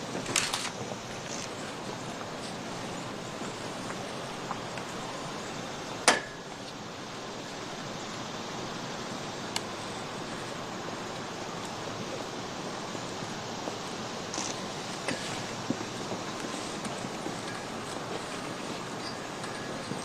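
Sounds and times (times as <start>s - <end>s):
outdoor hiss ambience: 0.0s - 20.0s.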